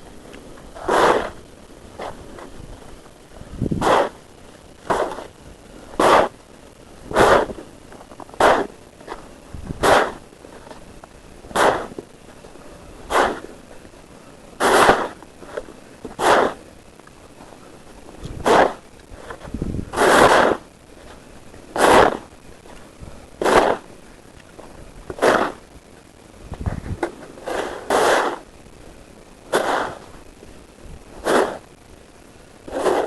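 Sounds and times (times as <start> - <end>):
shovel scraping snow: 0.7 - 1.4, 3.8 - 4.2, 4.9 - 5.3, 6.0 - 6.3, 7.1 - 7.6, 8.3 - 8.7, 9.8 - 10.2, 11.5 - 12.0, 13.1 - 13.5, 14.6 - 15.2, 16.2 - 16.6, 18.4 - 20.6, 21.8 - 22.3, 23.4 - 23.9, 25.1 - 25.6, 27.4 - 28.5, 29.5 - 30.2, 31.2 - 31.7, 32.7 - 33.0.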